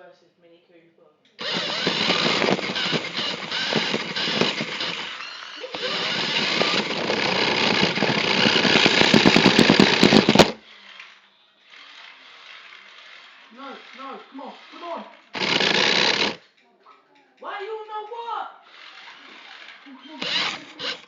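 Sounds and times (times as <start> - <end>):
toy car motors whirring: 1.4 - 16.6, 18.6 - 21.0.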